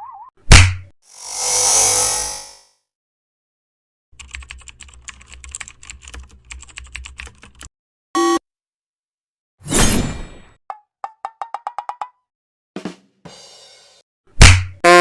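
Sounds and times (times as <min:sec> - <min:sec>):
computer keyboard typing: 0:04.2 - 0:07.7
short pitched beep: 0:08.2 - 0:08.4.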